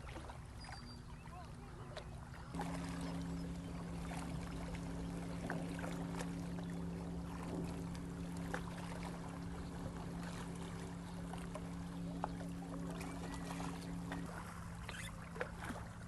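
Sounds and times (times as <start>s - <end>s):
boat engine hum: 0.0s - 16.0s
sea water splashing and lapping: 0.0s - 16.0s
small clicks and drips: 11.2s - 15.9s.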